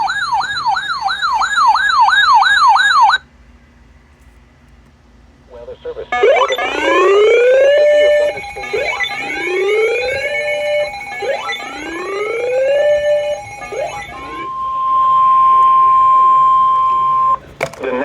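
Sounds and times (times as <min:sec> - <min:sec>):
alarm siren sweeping up: 0:00.0 - 0:03.2, 0:06.1 - 0:17.4
faint steady tone: 0:05.6 - 0:17.4.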